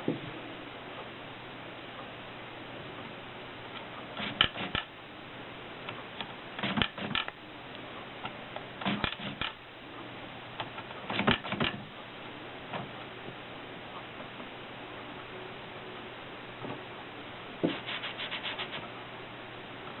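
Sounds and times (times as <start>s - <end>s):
typewriter clacking: 4.2s - 4.9s, 6.6s - 7.3s, 8.8s - 9.6s, 11.1s - 11.8s.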